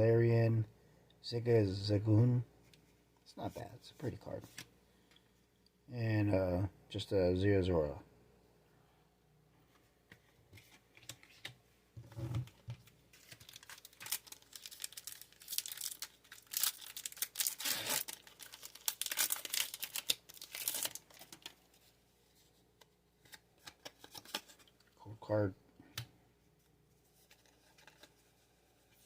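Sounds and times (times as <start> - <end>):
foil wrapper crinkling and tearing: 13.1 - 21.7.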